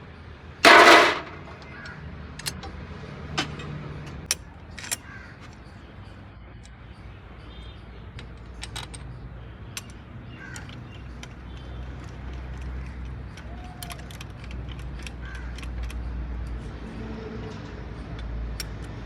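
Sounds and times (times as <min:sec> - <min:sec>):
metal tools clicking and clinking: 0:00.7 - 0:01.7.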